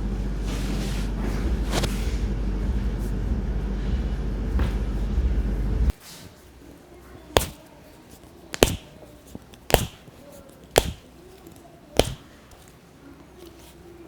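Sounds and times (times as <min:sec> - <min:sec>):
sharp joint cracks: 0:08.6 - 0:12.7.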